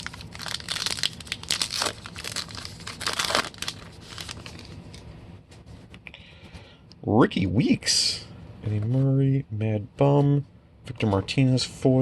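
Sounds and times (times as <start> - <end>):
foil wrapper crinkling and tearing: 0.0 - 5.0.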